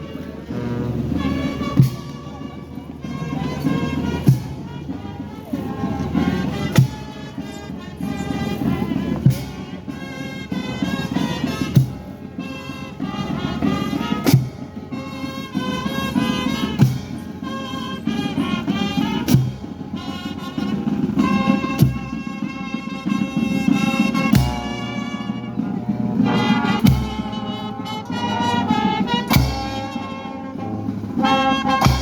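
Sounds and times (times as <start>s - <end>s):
slow brass music: 0.0s - 32.0s
heavy drum strikes: 29.3s - 30.0s, 31.8s - 32.0s.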